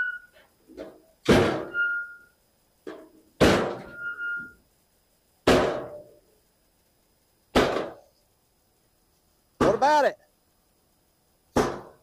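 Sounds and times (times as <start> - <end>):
short ringing tone: 0.0 - 0.3, 1.7 - 2.4, 3.9 - 4.6.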